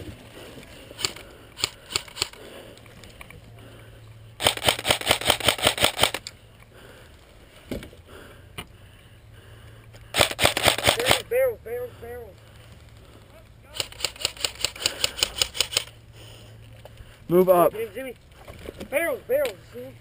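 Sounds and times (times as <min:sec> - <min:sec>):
airsoft rifle full-auto burst: 0:04.4 - 0:06.3, 0:10.1 - 0:11.2, 0:13.7 - 0:16.0.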